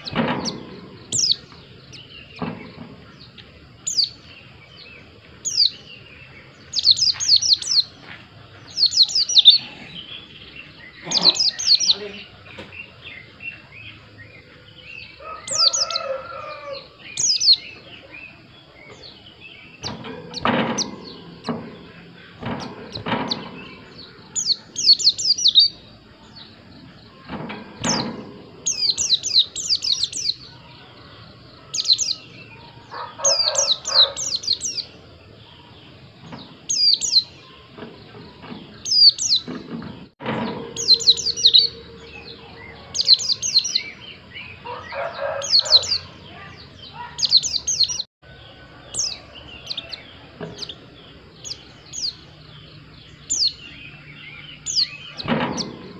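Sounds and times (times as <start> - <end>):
bird singing high chirps: 0.0 - 39.5, 40.4 - 55.9
dull knocks: 19.8 - 24.0.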